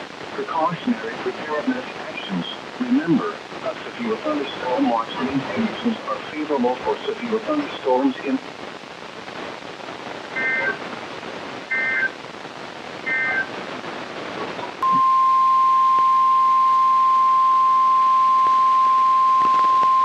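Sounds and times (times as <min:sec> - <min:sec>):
radio hiss: 0:00.0 - 0:15.0
steady single-pitch alarm tone: 0:13.1 - 0:13.5
warbling digital data tones: 0:13.1 - 0:13.5.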